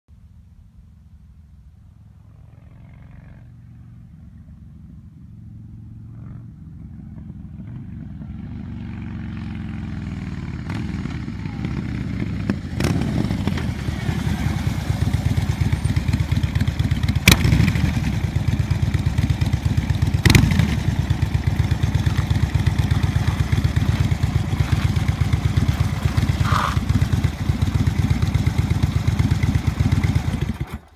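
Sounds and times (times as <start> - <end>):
motorcycle engine deep rumble: 0.1 - 30.9.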